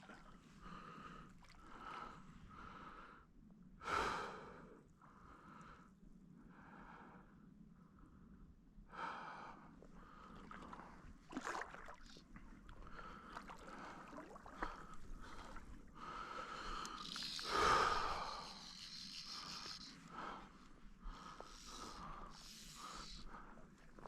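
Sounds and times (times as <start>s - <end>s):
water sloshing: 10.3s - 15.9s
heavy breathing: 12.9s - 23.6s.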